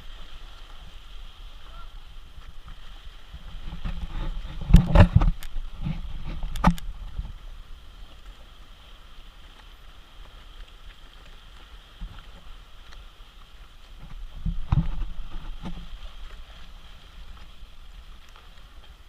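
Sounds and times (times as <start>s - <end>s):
paddle splashes and knocks: 0.0s - 19.0s.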